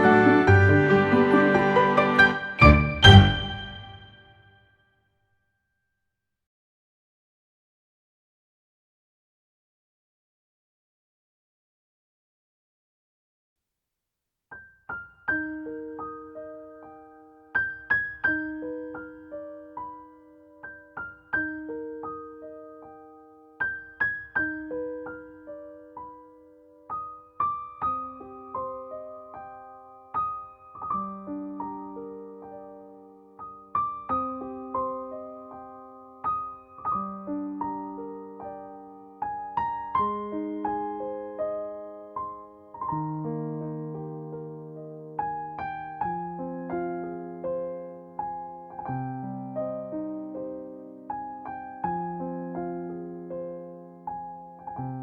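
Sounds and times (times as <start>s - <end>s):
gentle solo piano: 14.6s - 55.0s.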